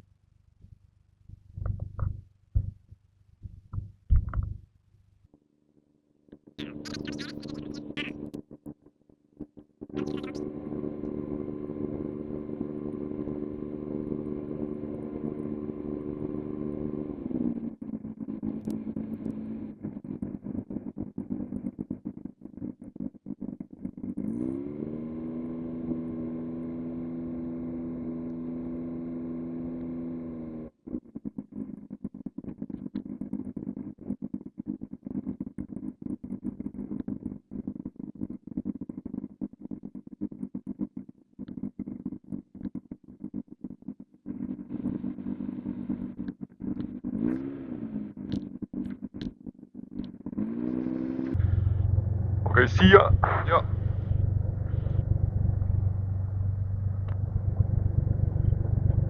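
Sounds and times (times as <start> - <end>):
rough engine rumble: 31.0 - 59.0
piston aircraft engine humming: 50.4 - 59.0.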